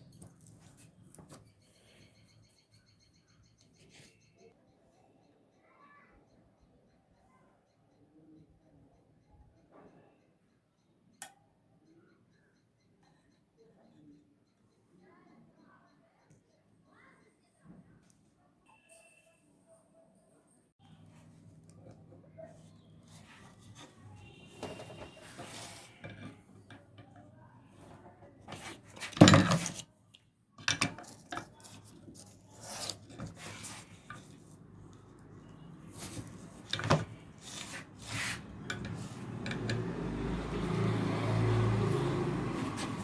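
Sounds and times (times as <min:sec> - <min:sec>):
metal parts scraping and rubbing: 0:23.1 - 0:27.0, 0:30.7 - 0:39.9.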